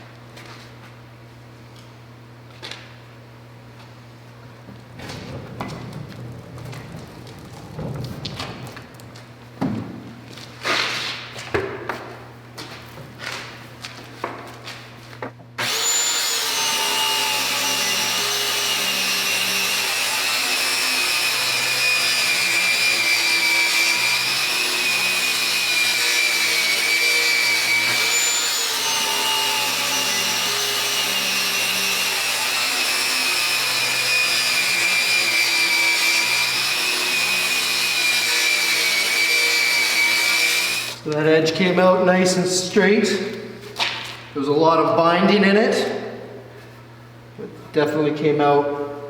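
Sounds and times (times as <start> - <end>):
circular saw cutting wood: 15.6 - 41.0.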